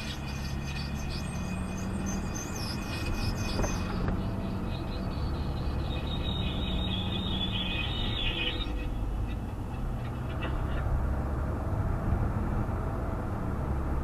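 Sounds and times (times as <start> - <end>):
car driving rumble: 0.0 - 14.0.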